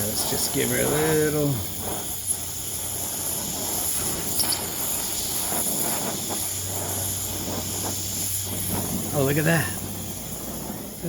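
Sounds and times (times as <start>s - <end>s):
gas torch flame hissing: 0.0s - 11.0s.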